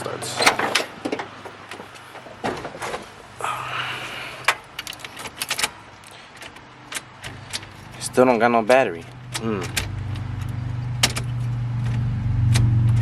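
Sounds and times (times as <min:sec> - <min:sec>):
car door and key clicks: 0:04.4 - 0:08.1, 0:09.1 - 0:12.7.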